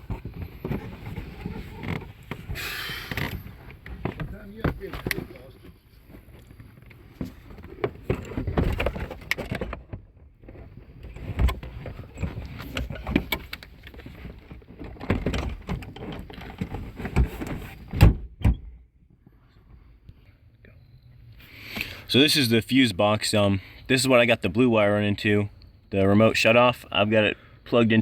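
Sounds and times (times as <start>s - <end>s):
clunks and knocks of car parts: 0.0s - 19.3s.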